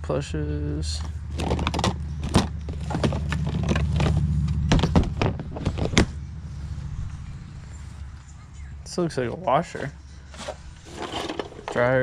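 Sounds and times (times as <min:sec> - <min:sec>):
steady low hum: 0:00.0 - 0:11.8
household items knocking and clattering: 0:01.3 - 0:06.1.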